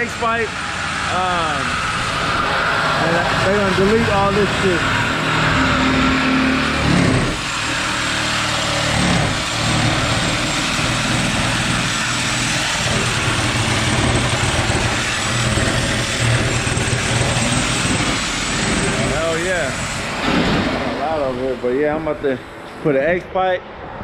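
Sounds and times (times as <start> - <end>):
car engine running: 0.0 - 22.7.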